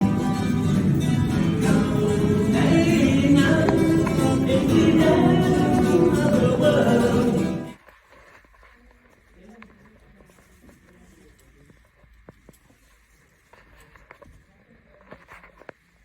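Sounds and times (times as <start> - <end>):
music with guitar and singing: 0.0 - 7.8.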